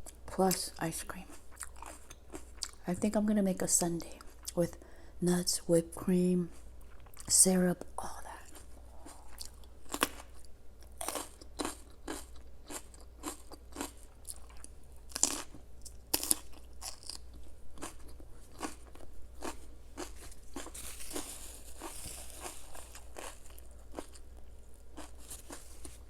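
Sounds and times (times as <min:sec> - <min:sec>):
person chewing crunchy food: 0:01.3 - 0:02.8, 0:08.4 - 0:26.0.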